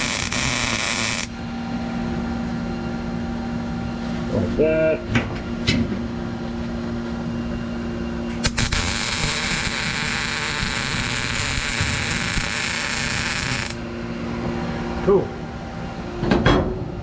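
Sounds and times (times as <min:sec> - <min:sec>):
welding arc clicks: 0:00.0 - 0:01.3, 0:08.4 - 0:13.8
welding arc hissing: 0:00.0 - 0:01.4, 0:08.3 - 0:13.8.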